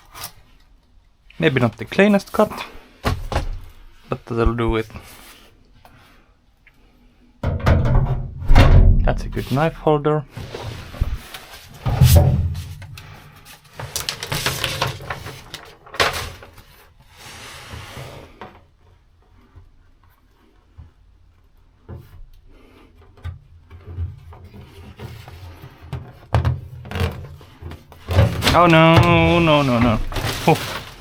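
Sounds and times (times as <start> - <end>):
rustling and peeling sheet: 9.2 - 18.3, 26.8 - 31.0.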